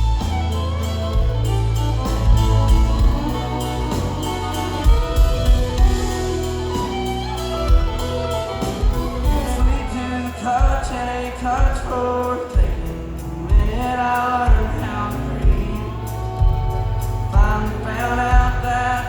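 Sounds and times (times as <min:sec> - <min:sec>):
country music: 0:00.0 - 0:19.0
low drum hits: 0:01.1 - 0:10.0
person singing: 0:02.0 - 0:19.0.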